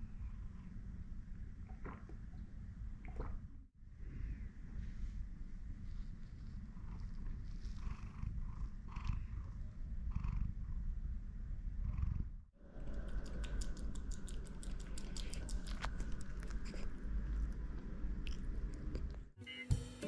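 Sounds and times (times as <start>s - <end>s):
cat purring: 5.6s - 19.3s.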